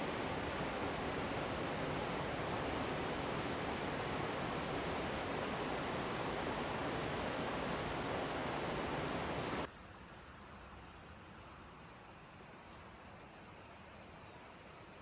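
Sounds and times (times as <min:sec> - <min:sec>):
steady rushing noise: 0:00.0 - 0:09.7.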